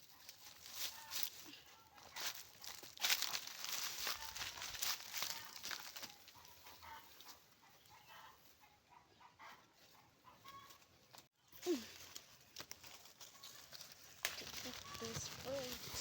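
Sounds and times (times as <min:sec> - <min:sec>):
chickens clucking softly: 0:06.3 - 0:10.8.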